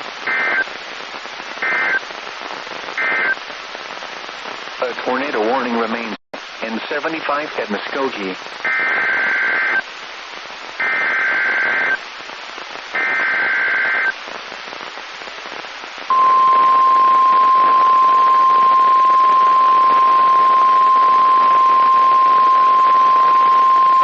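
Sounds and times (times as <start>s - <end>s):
radio hiss: 0.0s - 24.0s
steady warning alarm tone: 16.1s - 24.0s.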